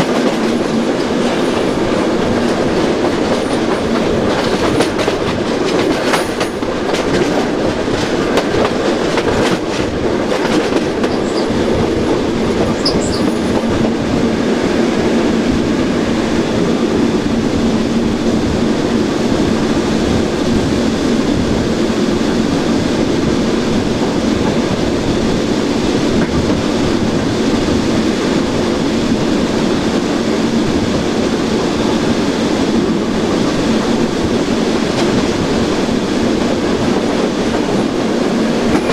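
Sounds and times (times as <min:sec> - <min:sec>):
wheels clicking over rail joints: 0:00.0 - 0:14.0.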